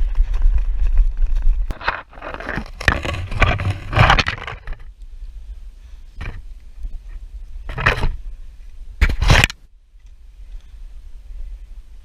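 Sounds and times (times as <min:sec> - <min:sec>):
running footsteps and gear rustling: 0:00.0 - 0:01.8
wind and handling rumble: 0:00.0 - 0:12.0.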